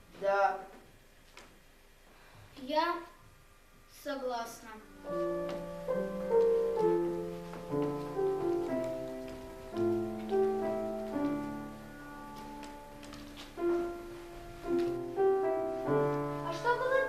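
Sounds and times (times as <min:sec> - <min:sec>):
slow piano music: 0:05.0 - 0:17.0.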